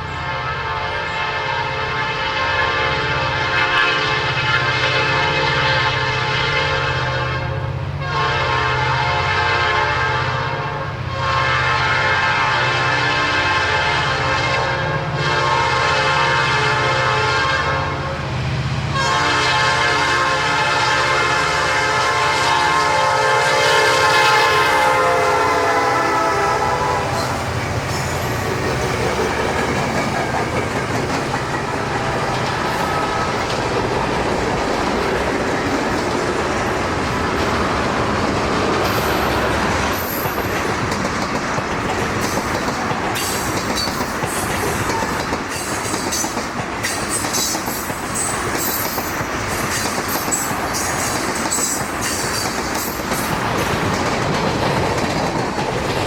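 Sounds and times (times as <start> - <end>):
locomotive air horn: 0.1 - 18.3, 18.9 - 29.9, 31.6 - 33.6
train cars clattering on rails: 23.2 - 56.0
locomotive engine rumble: 24.4 - 45.5.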